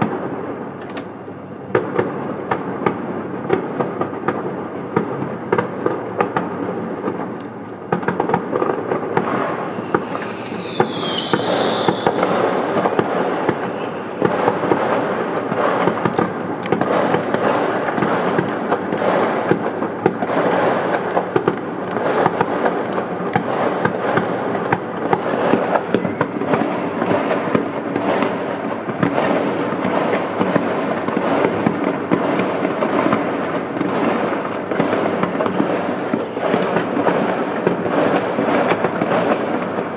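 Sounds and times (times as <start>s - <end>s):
fireworks crackling and banging: 0.0s - 39.9s
falling firework whistle: 9.1s - 16.0s, 25.1s - 28.3s.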